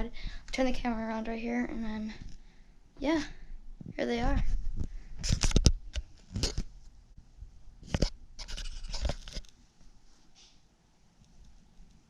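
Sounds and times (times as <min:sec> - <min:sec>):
handling rubs scrapes and clicks: 0:07.8 - 0:09.6.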